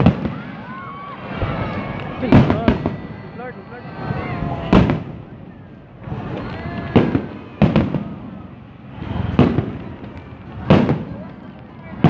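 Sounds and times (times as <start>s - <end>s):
booming firework bursts: 0.0s - 12.0s
low rumble of distant shells: 1.3s - 3.1s.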